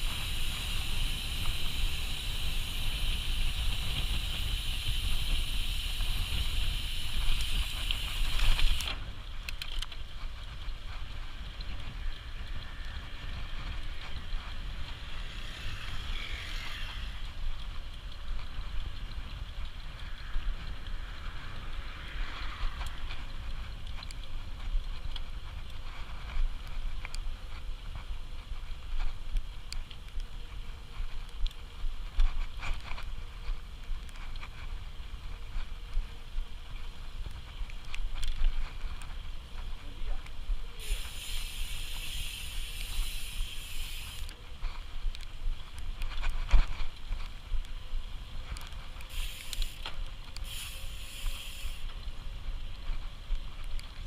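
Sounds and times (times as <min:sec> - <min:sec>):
loud steady hiss: 0:00.0 - 0:09.2, 0:40.4 - 0:44.4, 0:49.0 - 0:52.4
bike tyre and trail noise: 0:00.0 - 0:54.0
wind rumbling on microphone: 0:00.0 - 0:54.0.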